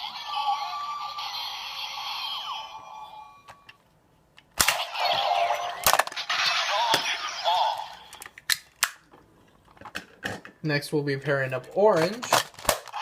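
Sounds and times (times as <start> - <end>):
toy voice: 4.8 - 8.2.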